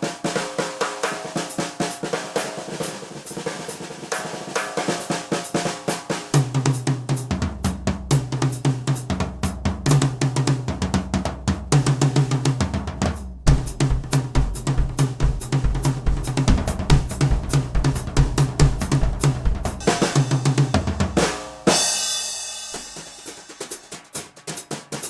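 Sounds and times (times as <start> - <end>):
fast drum beat: 0.0 - 25.0
deep bass line: 15.7 - 19.8.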